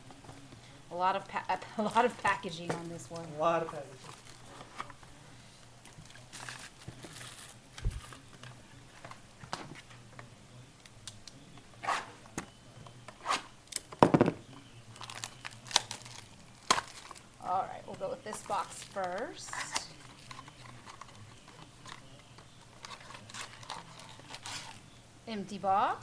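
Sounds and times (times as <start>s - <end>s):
packaging rustling and clicking: 5.9s - 9.9s, 15.0s - 17.3s, 18.0s - 24.8s.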